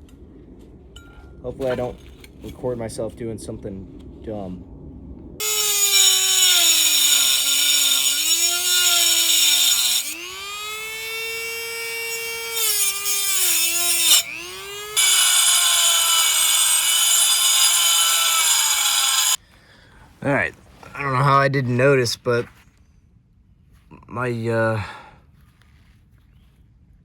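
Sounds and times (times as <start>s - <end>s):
metal grinding screech: 5.4s - 19.4s
power tool motor whine: 5.4s - 19.4s.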